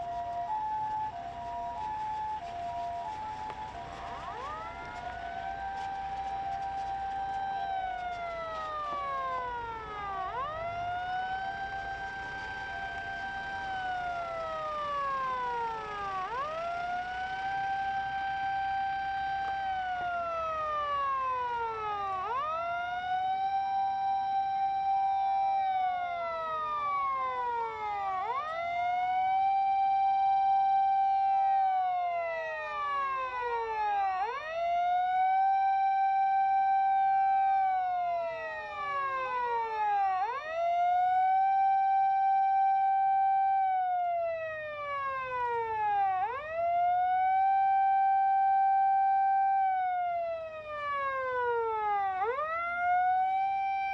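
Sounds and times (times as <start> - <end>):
emergency vehicle sirens wailing: 0.0 - 53.9.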